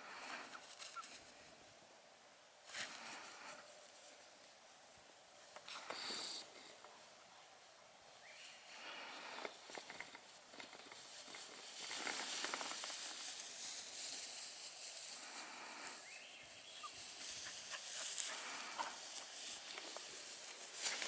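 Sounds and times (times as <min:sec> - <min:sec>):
puppies rustling in grass: 0:00.0 - 0:01.8, 0:02.6 - 0:21.0
steady hiss: 0:00.0 - 0:21.0
short crackles: 0:08.8 - 0:16.0, 0:17.0 - 0:21.0.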